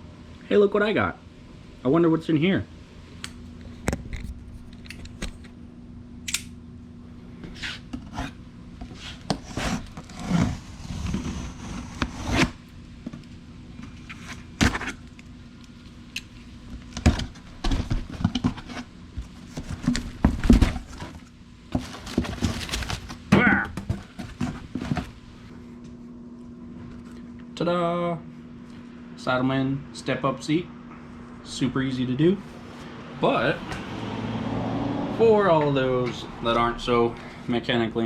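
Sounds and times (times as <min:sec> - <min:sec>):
cardboard box being unpacked: 0:08.1 - 0:12.6, 0:16.8 - 0:25.2.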